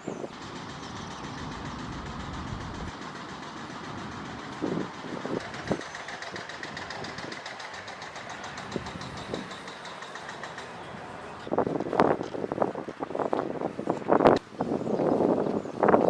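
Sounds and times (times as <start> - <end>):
engine running: 0.0 - 14.4
fast even ticking: 0.3 - 10.9.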